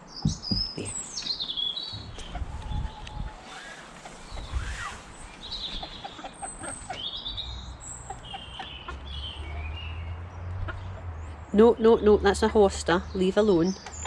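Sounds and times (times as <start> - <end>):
small birds chirping: 0.0 - 14.0.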